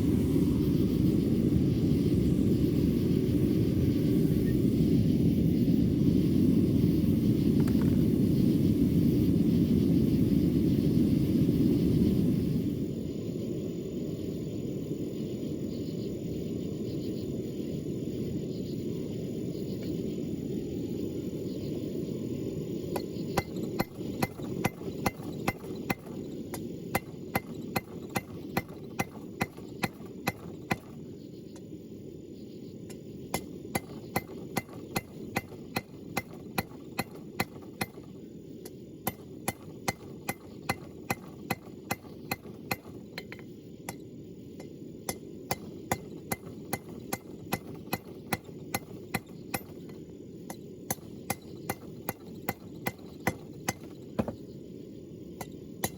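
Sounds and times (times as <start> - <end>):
low rushing noise: 0.0 - 15.7.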